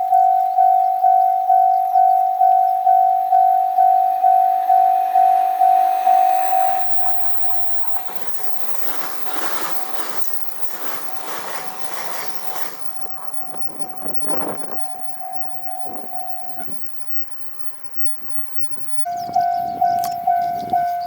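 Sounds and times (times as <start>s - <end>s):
train wheels clattering: 6.8s - 16.3s.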